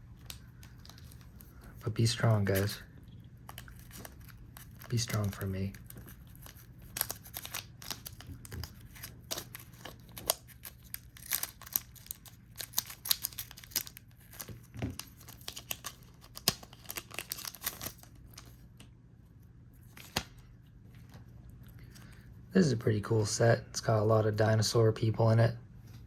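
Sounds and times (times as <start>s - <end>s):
cards being handled: 0.1s - 2.8s, 3.4s - 18.9s, 19.8s - 21.2s
wrapper crinkling and tearing: 3.5s - 18.6s.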